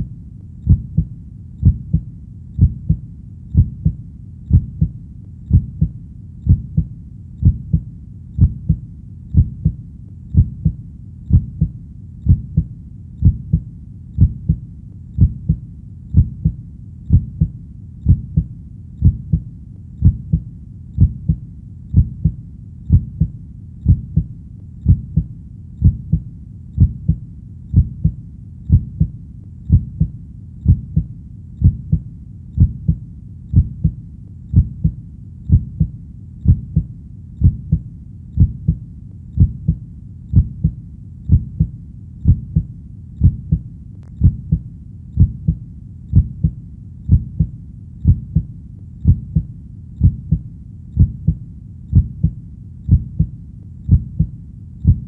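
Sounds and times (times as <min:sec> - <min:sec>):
heartbeat thumping: 0:00.6 - 0:14.6, 0:15.2 - 0:55.0.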